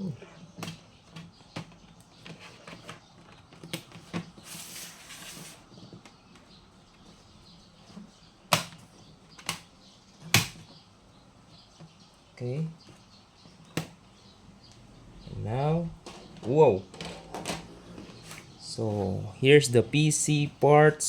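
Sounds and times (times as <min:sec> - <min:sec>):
plastic scraping: 0:00.6 - 0:06.2, 0:15.8 - 0:19.2.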